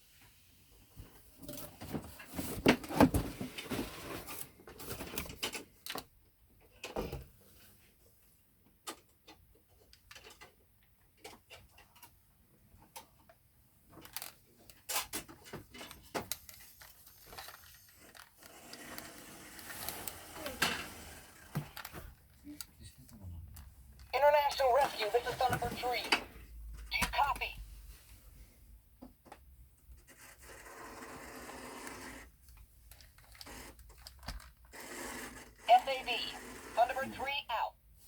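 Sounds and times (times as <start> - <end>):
plastic toy handling clicks and knocks: 4.7 - 7.0, 8.7 - 12.2, 12.8 - 20.8, 32.5 - 34.7.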